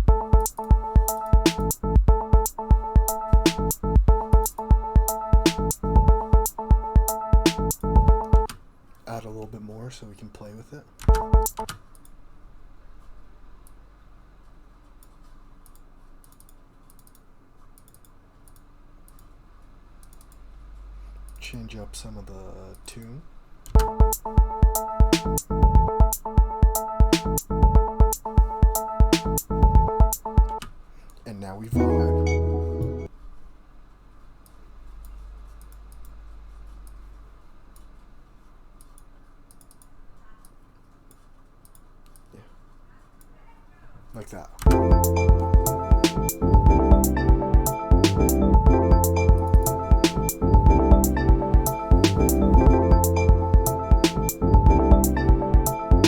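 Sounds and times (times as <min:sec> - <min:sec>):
computer keyboard typing clicks: 0:04.2 - 0:08.6, 0:11.0 - 0:12.2, 0:15.0 - 0:19.3, 0:30.0 - 0:30.8, 0:38.8 - 0:42.3
computer control clicks: 0:11.0 - 0:12.2.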